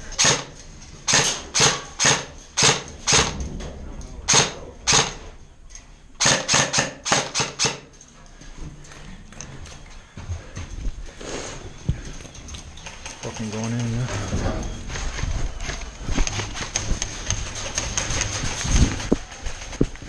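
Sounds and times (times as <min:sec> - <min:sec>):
airsoft rifle shots: 0:00.2 - 0:00.5, 0:01.1 - 0:03.4, 0:04.3 - 0:05.3, 0:06.2 - 0:07.9.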